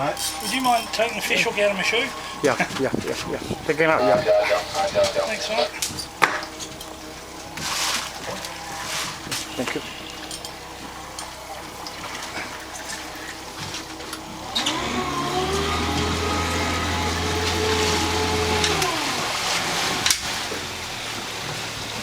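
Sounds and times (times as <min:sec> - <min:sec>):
water: 0:00.0 - 0:22.0
motor spinning: 0:10.8 - 0:20.9.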